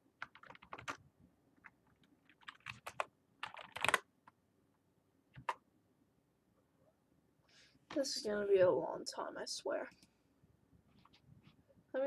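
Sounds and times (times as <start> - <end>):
typing on a keyboard: 0.2 - 1.0, 1.6 - 4.1.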